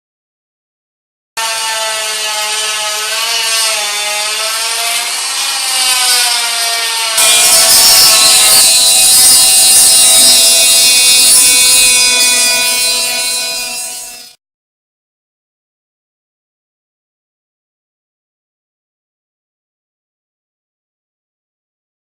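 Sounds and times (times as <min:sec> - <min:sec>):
harsh grinding noise: 0:01.4 - 0:14.4
power tool motor whine: 0:01.4 - 0:14.4.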